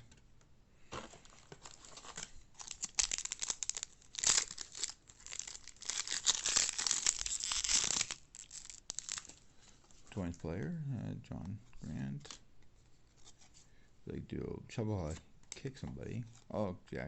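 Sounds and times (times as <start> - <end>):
plastic wrapper tearing and crinkling: 0.9 - 9.4.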